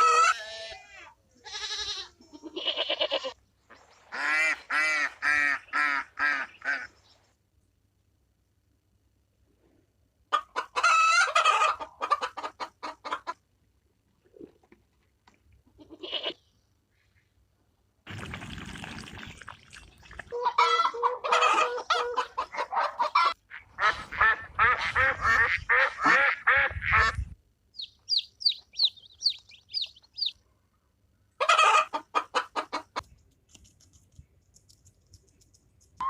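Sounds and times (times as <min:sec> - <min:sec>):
high falling chirps: 0:27.8 - 0:30.4.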